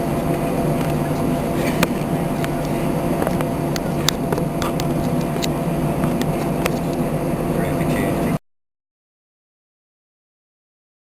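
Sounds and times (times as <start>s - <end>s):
airflow: 0.0s - 8.4s
airliner engines humming: 0.0s - 8.4s.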